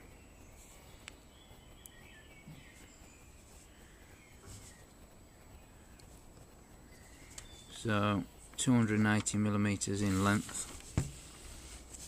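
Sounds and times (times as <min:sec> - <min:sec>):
faint chirps: 0:00.0 - 0:09.0.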